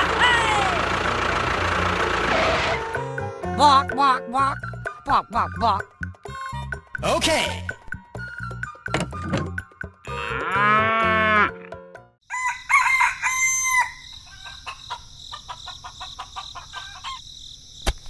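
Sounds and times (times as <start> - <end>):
rooster crowing: 12.2 - 17.2
clucking calls: 13.8 - 17.2.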